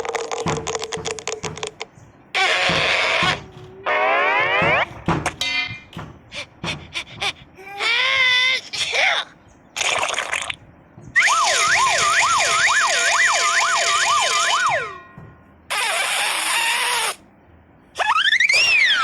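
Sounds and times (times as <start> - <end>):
swooping cartoon whistle: 11.2 - 15.0, 15.7 - 17.2, 18.0 - 19.0
whistle gliding upward: 11.2 - 15.0.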